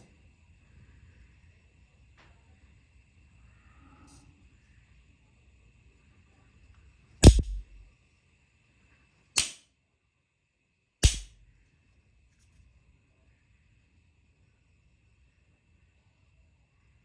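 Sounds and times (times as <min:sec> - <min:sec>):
sharp bangs: 0:07.2 - 0:07.8, 0:11.0 - 0:11.3.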